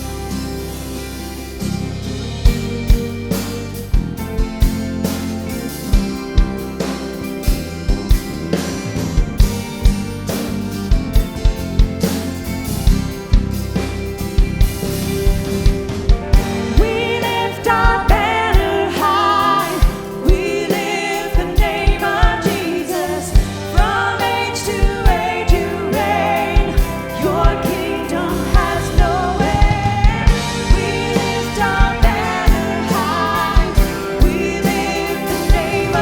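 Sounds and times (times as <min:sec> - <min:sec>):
worship band playing: 0:00.0 - 0:36.0
person singing: 0:16.5 - 0:36.0.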